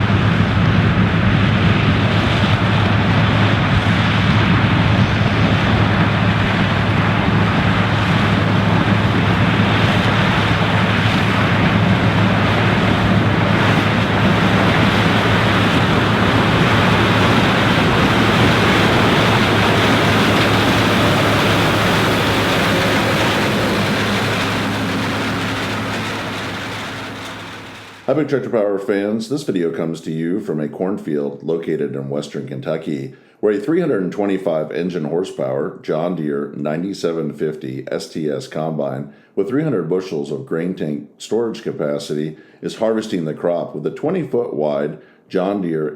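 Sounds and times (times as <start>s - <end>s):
diesel engine droning: 5.3s - 28.2s
threshing machinery rushing: 7.3s - 28.2s.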